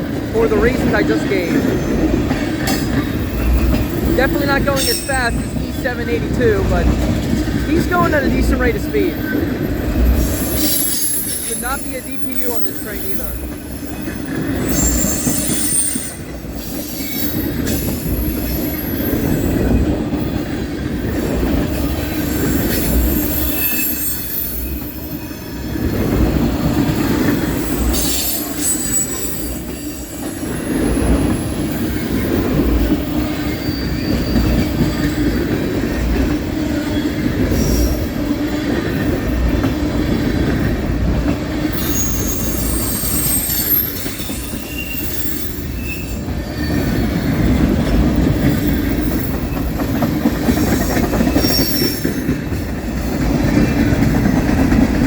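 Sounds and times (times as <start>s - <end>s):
freight train wheels rumbling: 0.0s - 55.0s
train clatter: 0.0s - 55.0s
high-pitched wheel squeals: 14.6s - 17.4s, 22.6s - 25.5s, 27.9s - 30.8s, 33.4s - 35.2s, 41.7s - 47.0s.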